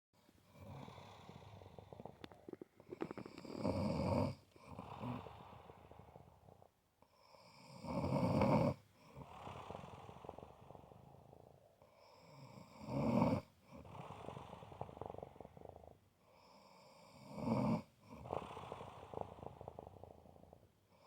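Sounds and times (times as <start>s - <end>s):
quiet breathing: 0.2s - 7.8s, 13.4s - 21.0s
loud snoring: 0.4s - 6.7s, 7.4s - 20.7s.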